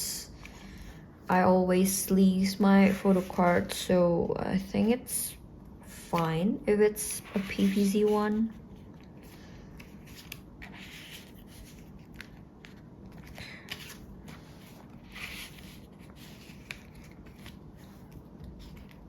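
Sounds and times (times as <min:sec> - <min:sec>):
plastic sleeves rustling: 0:07.0 - 0:19.0.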